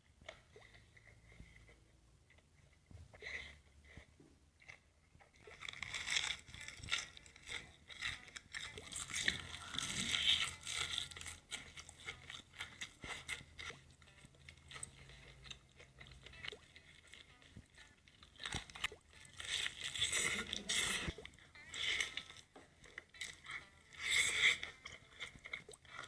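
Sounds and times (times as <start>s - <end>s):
crunching and chewing food: 0.0s - 26.0s.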